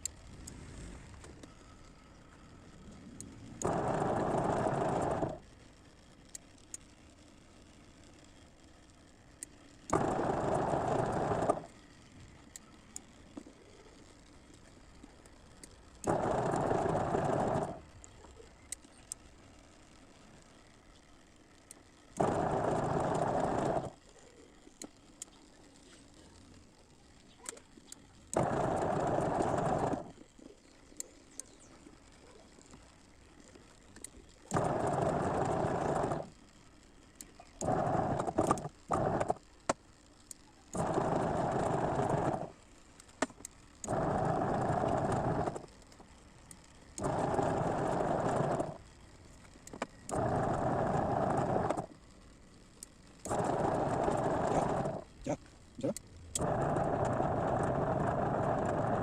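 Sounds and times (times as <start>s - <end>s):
washing machine motor running: 0.0s - 5.5s, 9.8s - 12.7s, 16.0s - 19.1s, 21.6s - 24.4s, 25.8s - 33.2s, 34.0s - 36.5s, 37.2s - 39.5s, 40.5s - 42.6s, 43.8s - 45.8s, 46.9s - 51.9s, 53.2s - 59.0s
sharp clicks: 8.0s - 59.0s.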